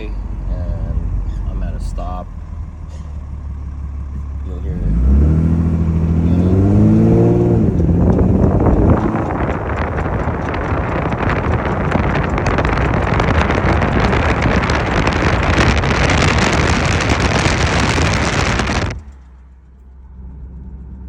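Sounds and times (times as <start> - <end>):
low hum: 0.0 - 21.0
road and wind noise: 0.0 - 21.0
rapid clicking from brake caliper: 7.6 - 16.0.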